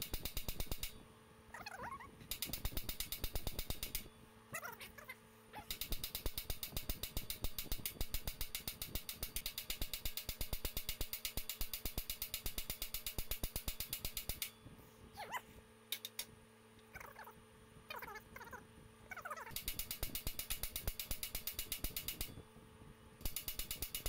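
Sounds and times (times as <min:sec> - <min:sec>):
ratchet wrench clicking: 0:00.0 - 0:01.0, 0:02.3 - 0:04.1, 0:05.6 - 0:14.5, 0:15.9 - 0:16.3, 0:19.5 - 0:22.4, 0:23.2 - 0:24.0.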